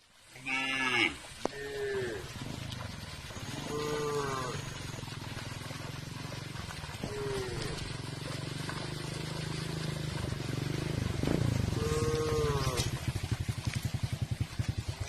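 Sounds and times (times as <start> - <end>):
low pulsing rumble: 1.9 - 15.0
animal call: 3.3 - 5.3, 11.7 - 13.0.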